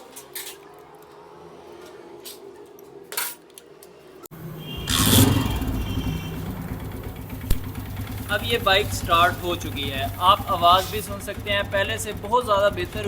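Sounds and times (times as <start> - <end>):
motorcycle engine starting and idling: 4.3 - 13.0.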